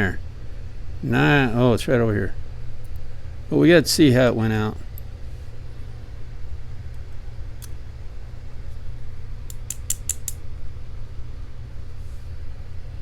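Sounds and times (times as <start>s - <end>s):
steady low hum: 0.0s - 13.0s
small metallic clicks: 9.5s - 10.4s.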